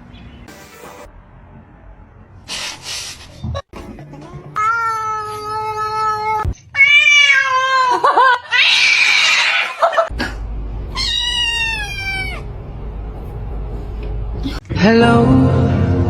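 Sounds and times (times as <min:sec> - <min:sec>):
cat meowing: 0:04.6 - 0:09.7, 0:10.9 - 0:12.5.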